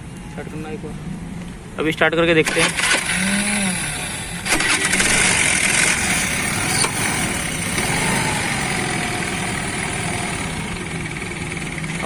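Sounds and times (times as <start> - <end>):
scooter engine starting clicks: 2.4 - 3.3, 4.4 - 6.0
scooter engine idling: 2.7 - 12.0.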